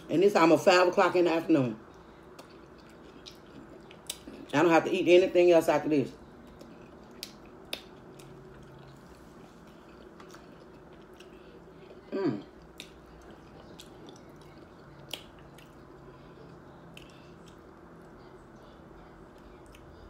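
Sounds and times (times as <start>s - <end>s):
person chewing crunchy taco shell: 2.3s - 4.5s, 6.4s - 16.2s.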